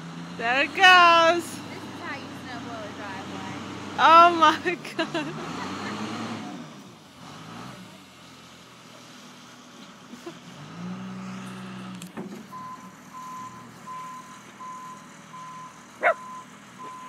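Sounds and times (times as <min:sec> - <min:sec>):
bulldozer engine running: 0:00.0 - 0:17.0
reversing alarm beeping: 0:12.5 - 0:17.0.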